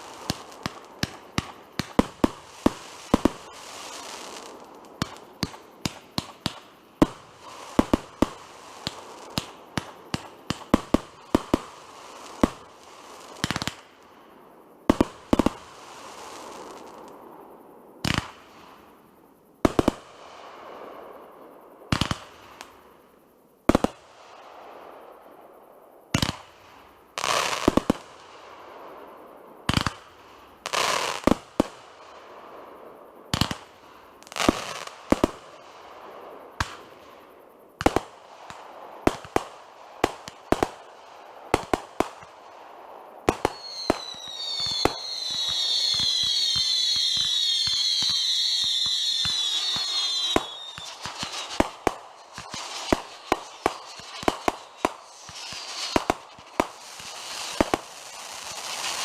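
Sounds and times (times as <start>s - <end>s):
fireworks crackling: 0.0s - 14.0s, 14.9s - 17.3s, 37.8s - 59.0s
fireworks bangs: 43.2s - 59.0s
shrill falling whistles: 43.5s - 51.6s.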